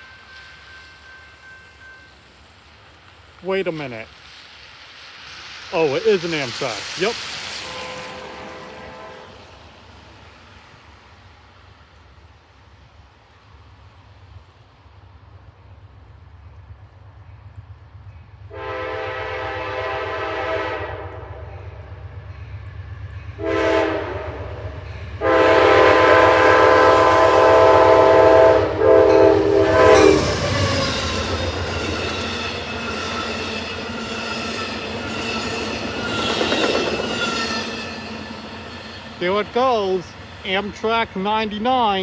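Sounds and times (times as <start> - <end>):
train rumble and wheel clatter: 0.0 - 42.0
locomotive air horn blasts: 7.6 - 9.5, 18.5 - 21.5, 23.4 - 24.6, 25.2 - 30.9.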